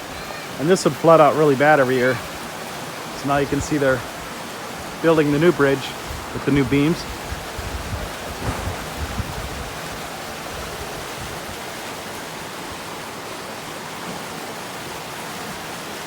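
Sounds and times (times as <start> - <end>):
river water rushing: 0.0 - 16.0
low bumps: 5.1 - 11.4.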